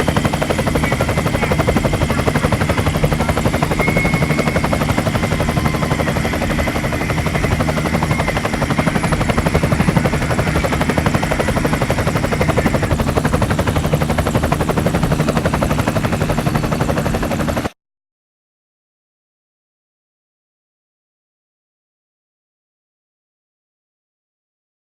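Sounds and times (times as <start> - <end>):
thin high whine: 0.0 - 13.9
model helicopter rotor chopping: 0.0 - 17.7.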